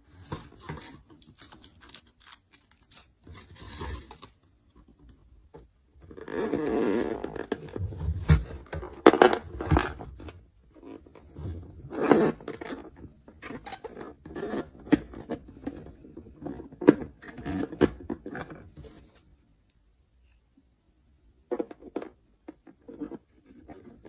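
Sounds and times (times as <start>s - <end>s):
packaging rustling: 0.5s - 3.3s.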